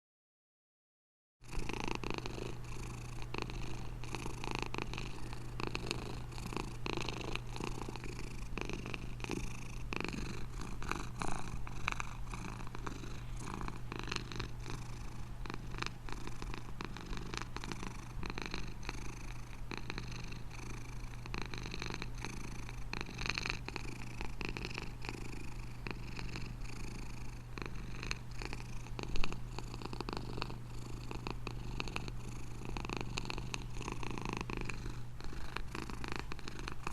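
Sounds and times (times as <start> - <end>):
cat purring: 1.4 - 36.9.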